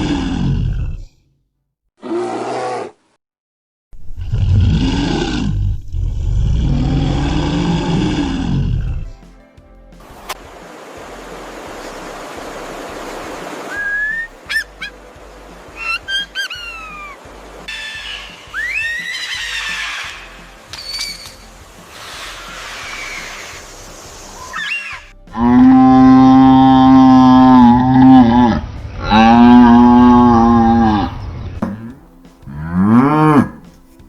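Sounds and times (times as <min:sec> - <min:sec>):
tiger roaring: 0:02.0 - 0:03.0, 0:04.2 - 0:09.1, 0:25.3 - 0:33.8
steady hiss: 0:09.2 - 0:24.7
high gliding chirps: 0:13.7 - 0:30.5.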